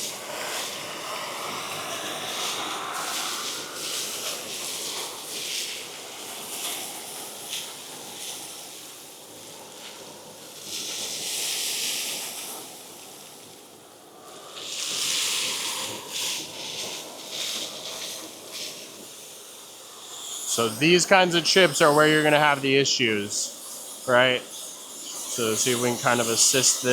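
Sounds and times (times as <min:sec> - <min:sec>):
industrial vacuum hiss: 0:00.0 - 0:26.9.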